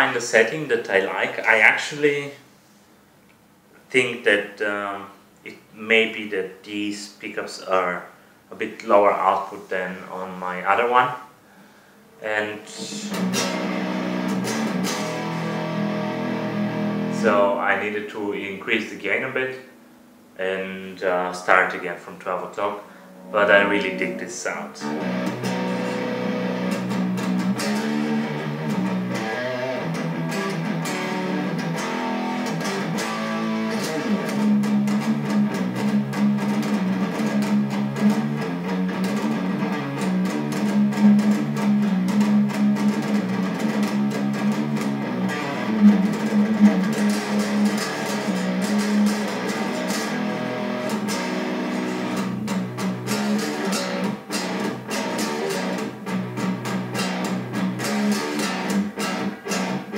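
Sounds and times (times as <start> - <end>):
distorted electric guitar: 12.1 - 59.9.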